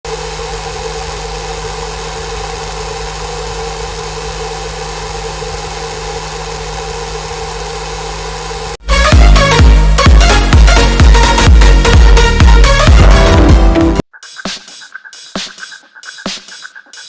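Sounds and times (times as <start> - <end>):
vacuum cleaner motor whirring: 0.1 - 8.8.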